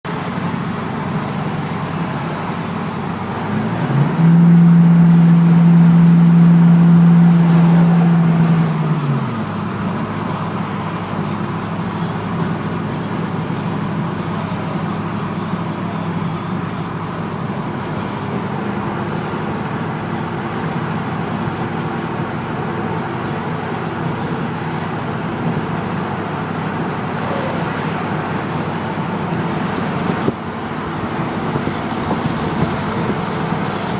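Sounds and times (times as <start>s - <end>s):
road noise: 0.0s - 33.9s
truck engine pulling uphill: 0.1s - 33.9s
loud buzzing rattle: 30.0s - 33.9s.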